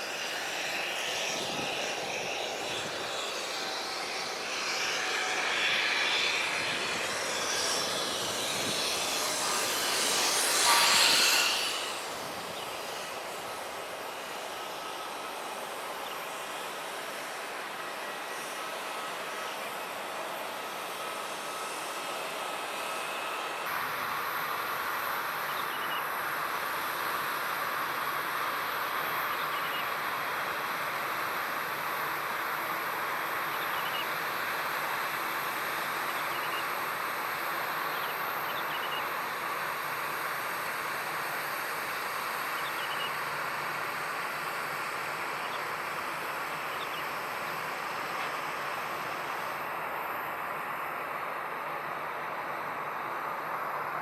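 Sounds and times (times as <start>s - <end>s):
jet engine rushing: 0.0s - 25.3s.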